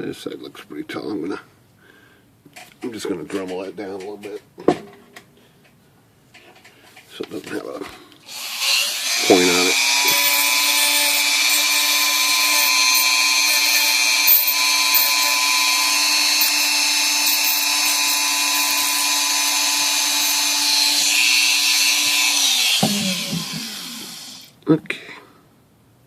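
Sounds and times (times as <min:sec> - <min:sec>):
rotary tool grinding metal: 0:08.3 - 0:24.5.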